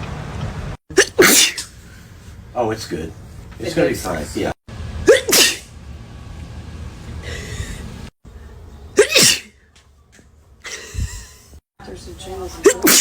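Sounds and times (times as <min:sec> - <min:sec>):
person sneezing: 0:00.9 - 0:01.7, 0:05.1 - 0:05.7, 0:09.0 - 0:09.6, 0:12.7 - 0:13.0.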